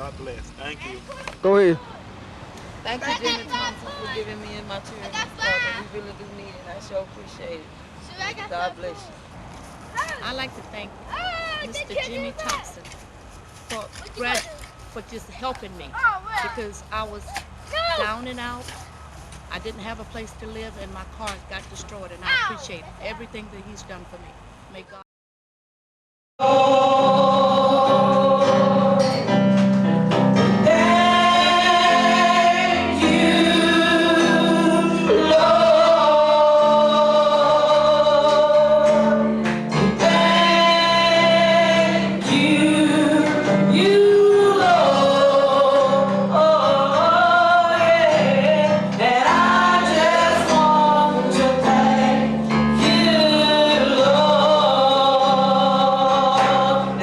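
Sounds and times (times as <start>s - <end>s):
men and women singing gospel: 26.4s - 29.6s, 30.4s - 57.0s.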